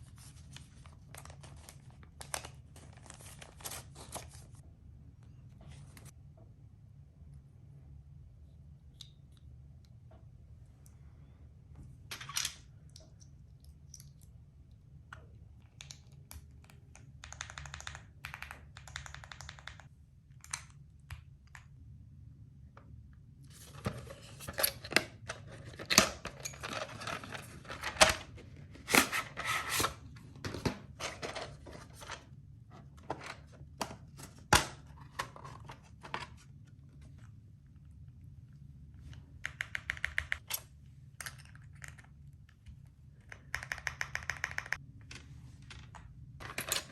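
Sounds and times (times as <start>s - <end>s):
mechanical keyboard typing: 15.7s - 20.6s, 39.5s - 40.4s, 43.3s - 44.8s.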